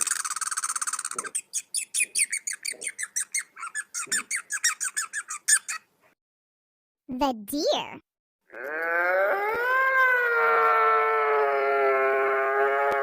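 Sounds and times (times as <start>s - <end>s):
squirrel alarm chattering: 0.0s - 5.8s.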